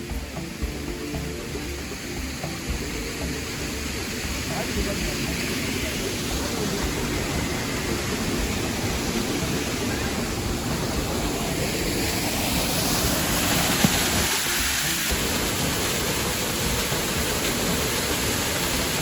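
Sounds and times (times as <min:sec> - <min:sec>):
waterfall rushing water: 0:00.0 - 0:19.0.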